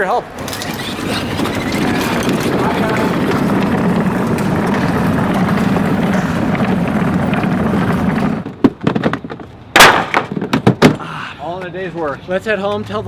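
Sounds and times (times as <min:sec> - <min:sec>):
toy car motors humming: 0:00.4 - 0:08.4.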